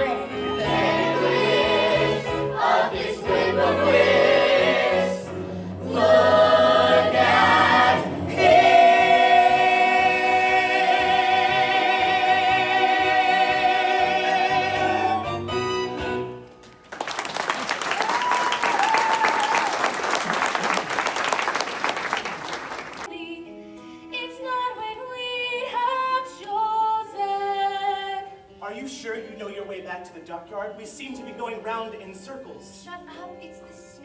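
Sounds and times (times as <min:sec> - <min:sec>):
cast singing with accompaniment: 0:00.0 - 0:15.4
audience applause: 0:16.8 - 0:23.1.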